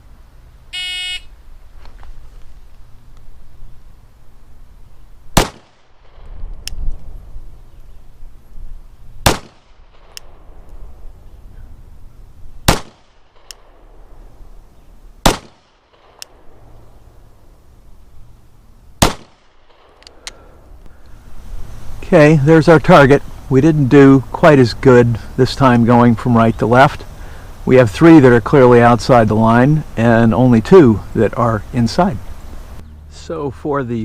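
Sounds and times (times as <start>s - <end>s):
pistol shots with echo: 5.4s - 6.2s, 9.2s - 10.4s, 12.6s - 13.8s, 15.2s - 16.4s, 19.0s - 20.0s.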